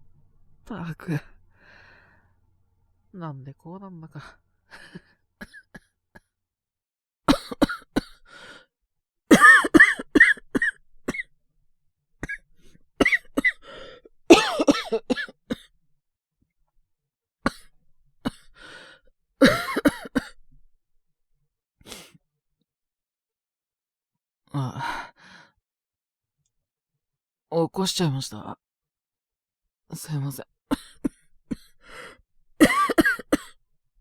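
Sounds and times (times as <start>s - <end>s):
man coughing harshly: 7.3s - 8.2s, 9.3s - 11.2s, 13.0s - 13.7s, 14.3s - 15.6s, 19.4s - 20.3s, 30.7s - 31.7s, 32.6s - 33.5s.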